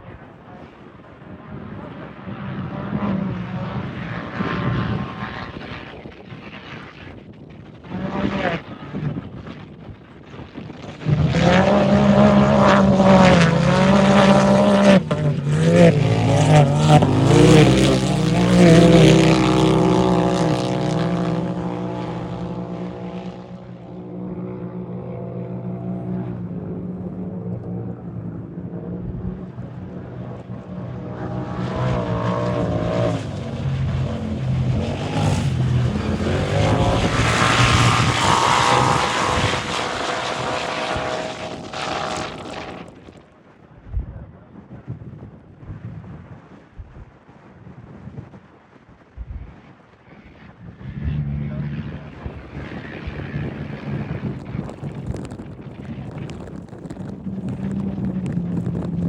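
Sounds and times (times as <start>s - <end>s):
race engines running hard: 0.0s - 5.8s, 11.0s - 43.1s, 50.6s - 59.0s.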